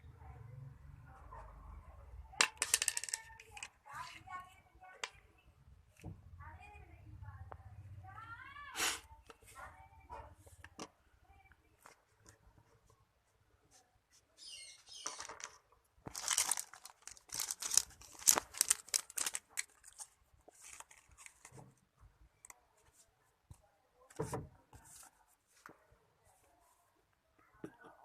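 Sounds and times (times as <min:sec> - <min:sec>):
plastic packaging crinkling: 0:14.9 - 0:21.6.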